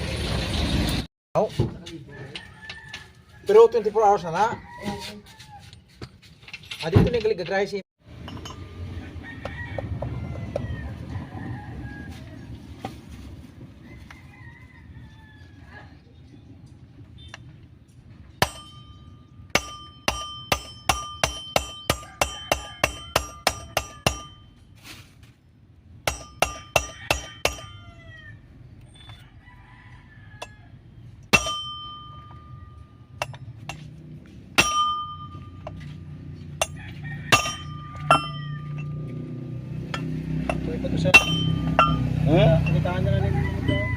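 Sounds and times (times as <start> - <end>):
hammer blows on metal: 39.9 - 42.8.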